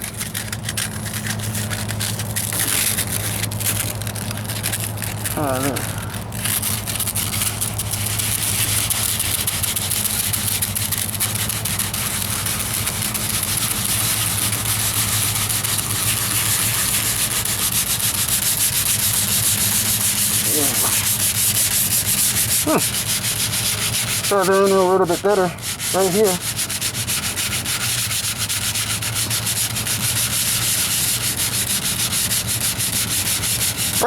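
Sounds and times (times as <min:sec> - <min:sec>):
sandpaper rubbing on metal: 0:00.0 - 0:34.0
steady low hum: 0:00.0 - 0:34.0.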